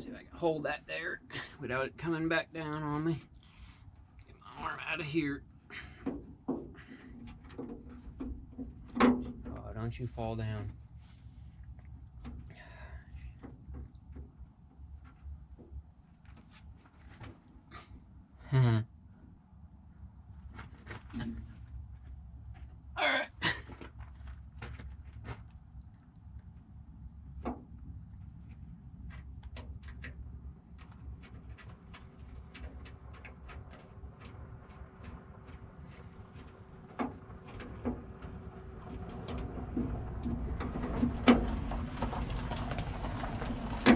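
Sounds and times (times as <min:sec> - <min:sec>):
low steady rumble: 0:00.0 - 0:43.9
faint voice: 0:18.5 - 0:18.9, 0:23.0 - 0:23.6.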